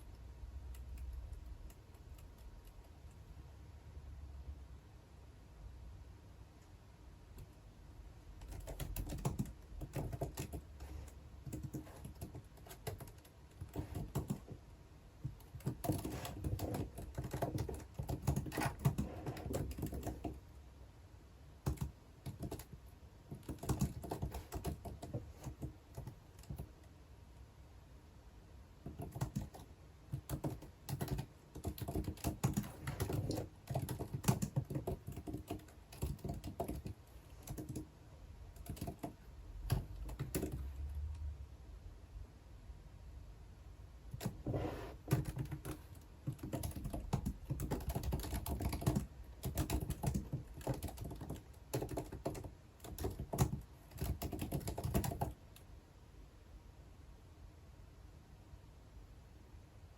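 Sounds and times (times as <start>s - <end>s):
typing on computer keyboard: 0.6s - 3.1s, 8.3s - 14.6s, 15.2s - 20.5s, 21.6s - 26.9s, 28.8s - 37.9s, 38.5s - 40.9s, 44.1s - 55.6s.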